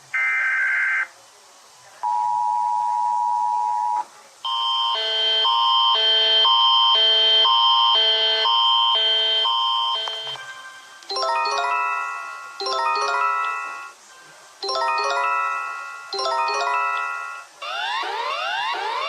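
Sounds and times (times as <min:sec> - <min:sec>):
two-tone attention signal: 0:04.5 - 0:14.0, 0:14.6 - 0:17.5
alarm chime alternating chords: 0:06.9 - 0:14.0, 0:14.6 - 0:19.0
data tones burst: 0:14.6 - 0:17.5.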